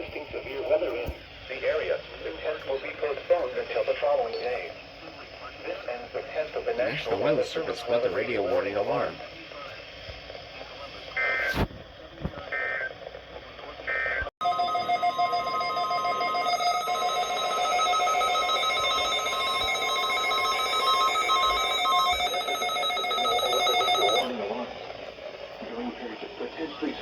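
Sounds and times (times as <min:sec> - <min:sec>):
steady electronic alert tone: 0:14.4 - 0:24.3.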